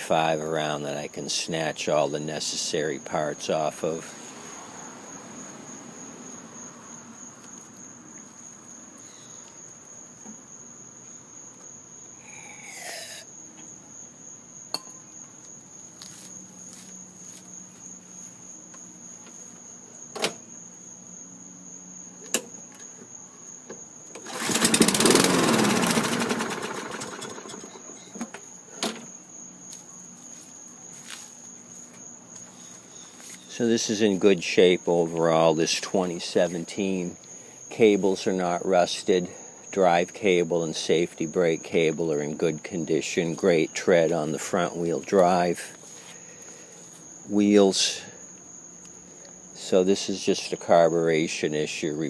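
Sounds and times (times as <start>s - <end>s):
crickets chirping: 0.0s - 52.0s
mower engine firing briefly: 24.2s - 28.0s.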